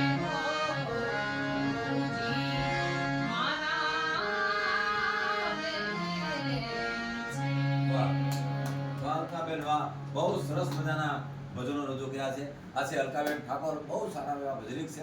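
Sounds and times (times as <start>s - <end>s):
sustained instrumental accompaniment: 0.0s - 12.2s
woman singing: 3.2s - 7.5s.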